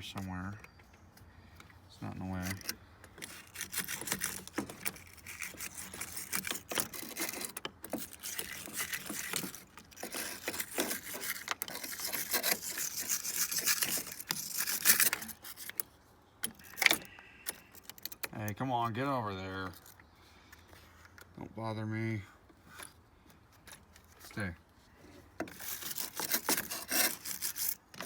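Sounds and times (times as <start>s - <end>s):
wire brush scratching metal: 2.3s - 15.8s, 25.5s - 28.0s.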